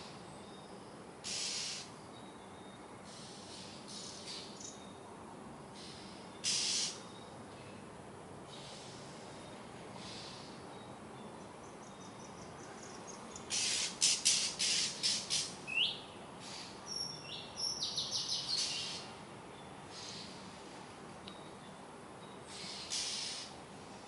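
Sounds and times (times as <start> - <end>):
bird harsh rasping calls: 1.2 - 1.9, 5.8 - 7.0, 13.4 - 19.1, 22.5 - 23.5.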